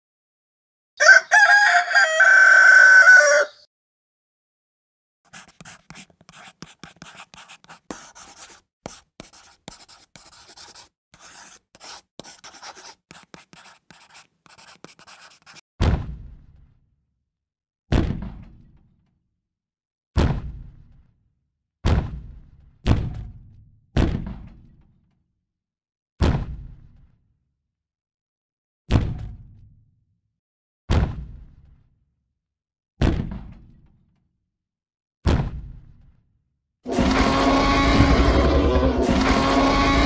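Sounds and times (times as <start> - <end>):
rooster crowing: 1.0 - 3.6.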